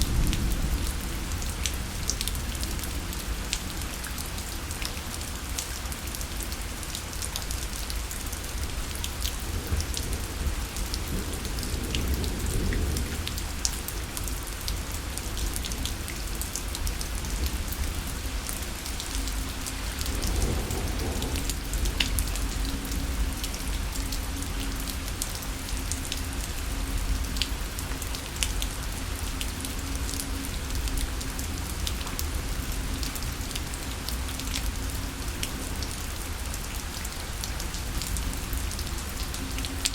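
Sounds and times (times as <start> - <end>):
steady rain falling: 0.0 - 39.9
distant thunder rumbling: 20.0 - 23.9.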